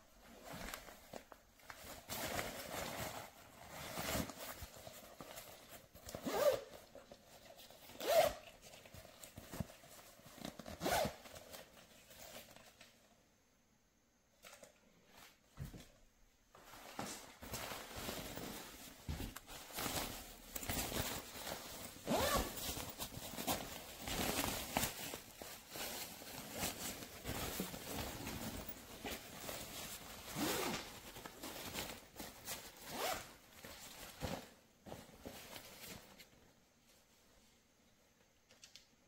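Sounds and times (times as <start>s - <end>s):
suitcase zipper rasping: 6.2s - 6.7s, 8.0s - 8.4s, 22.0s - 22.6s.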